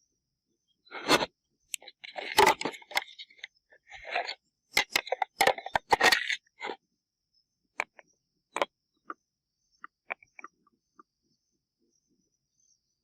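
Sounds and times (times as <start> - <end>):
scrapes and clicks: 0.9 - 6.8.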